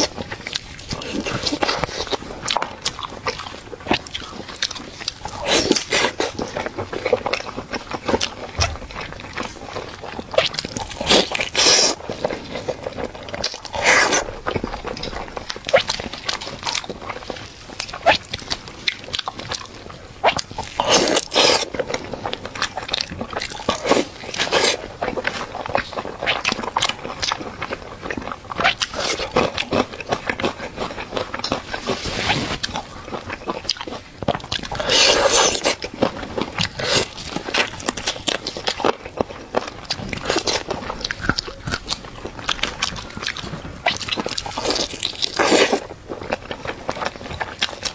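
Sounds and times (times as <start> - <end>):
crunching and chewing: 0.0 - 47.9
wet slurp: 13.4 - 14.6, 23.8 - 25.4, 31.0 - 33.2, 34.8 - 35.9, 44.5 - 45.9
hissy scraping: 31.6 - 32.7.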